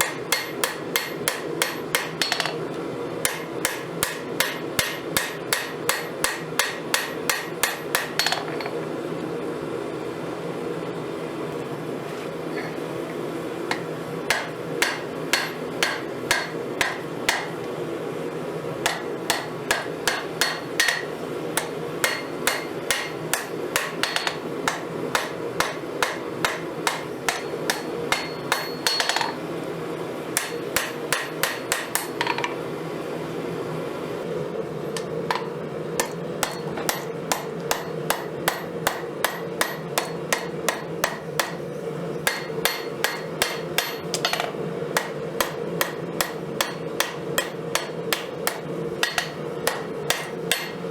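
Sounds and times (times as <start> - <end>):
hammer striking steel on anvil: 0.0 - 2.6, 3.2 - 8.8, 13.7 - 17.6, 18.8 - 29.4, 30.4 - 32.6, 35.0 - 50.9
steady background hum: 0.0 - 50.9.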